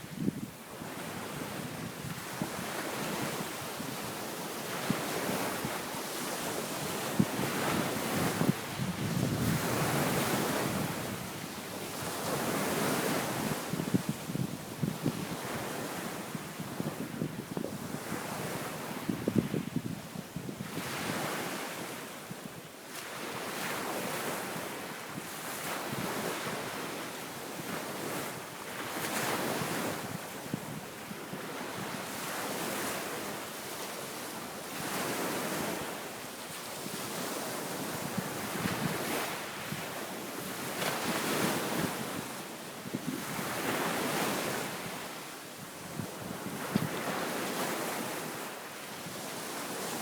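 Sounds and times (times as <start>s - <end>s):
waves breaking on a beach: 0.0s - 50.0s
wind buffeting microphone: 7.1s - 15.5s.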